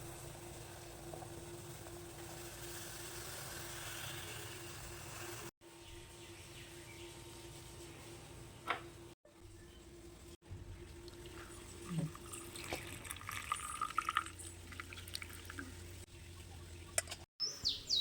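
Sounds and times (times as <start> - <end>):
liquid pouring and dripping: 11.0 - 16.0.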